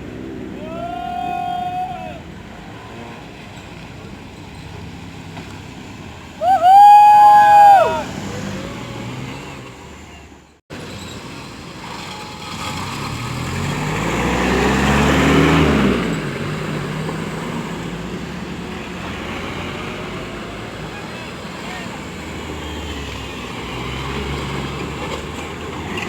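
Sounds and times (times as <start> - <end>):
vehicle engine passing by: 7.1 - 26.0.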